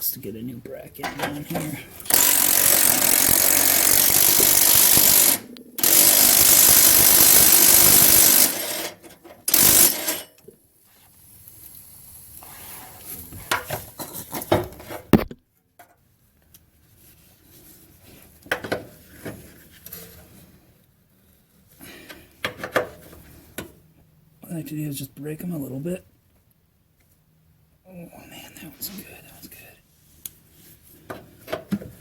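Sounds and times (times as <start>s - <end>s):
impact wrench hammering on bolts: 2.0s - 10.4s.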